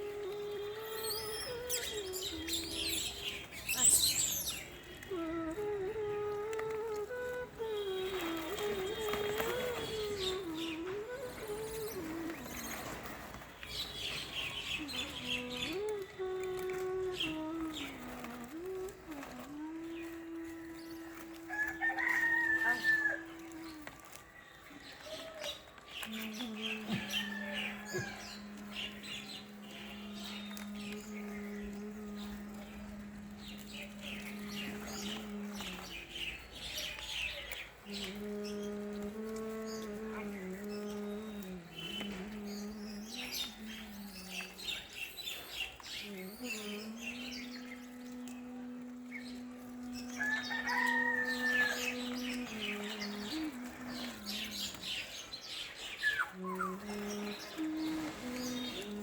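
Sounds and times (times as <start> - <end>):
birds chirping: 0.0 - 59.0
rooster crowing: 21.5 - 23.6, 26.9 - 28.6, 50.2 - 52.3.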